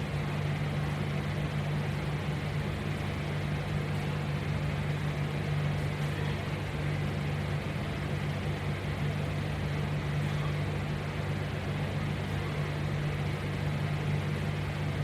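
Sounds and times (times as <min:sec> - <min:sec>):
low machine hum: 0:00.0 - 0:15.0.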